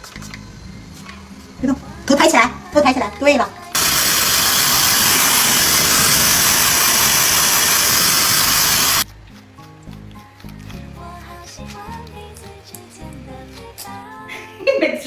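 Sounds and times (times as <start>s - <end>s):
rushing air hiss: 3.8s - 9.0s.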